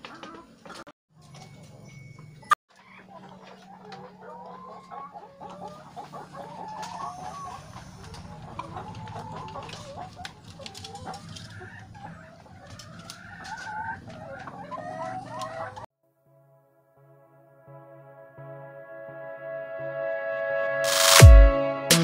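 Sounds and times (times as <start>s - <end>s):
chickens clucking: 0.0s - 15.9s.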